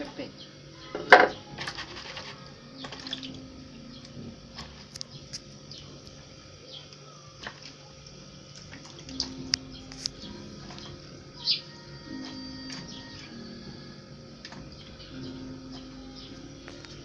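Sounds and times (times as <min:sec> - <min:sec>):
water splashing: 0:07.3 - 0:11.0.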